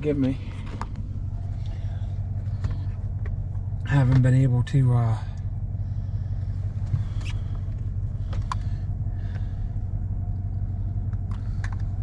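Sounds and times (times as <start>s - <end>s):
pickup truck driving drone: 0.0s - 12.0s.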